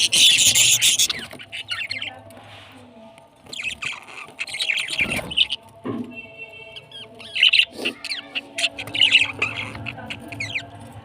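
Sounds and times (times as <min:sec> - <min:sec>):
parrots chirping: 0:00.0 - 0:02.4, 0:03.4 - 0:11.0.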